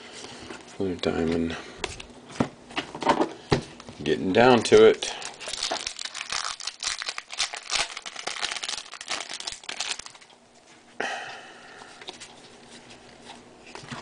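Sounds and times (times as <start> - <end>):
foil wrapper crinkling: 4.6 - 10.4.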